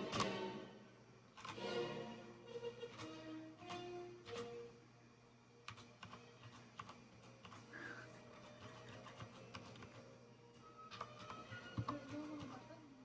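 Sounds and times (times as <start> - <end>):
mechanical keyboard typing: 5.7 - 10.0, 10.9 - 12.8.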